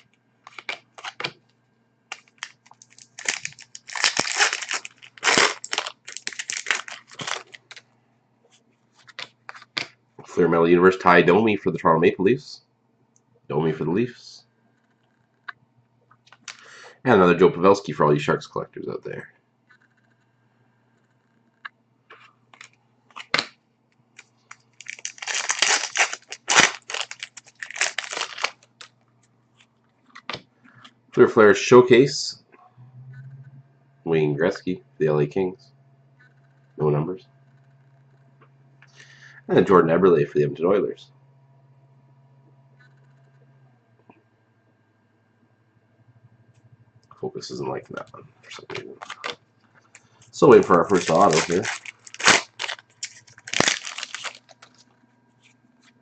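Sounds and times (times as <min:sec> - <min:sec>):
wrapper crinkling: 0:00.0 - 0:01.3, 0:02.1 - 0:07.8, 0:24.2 - 0:29.0, 0:48.4 - 0:54.8.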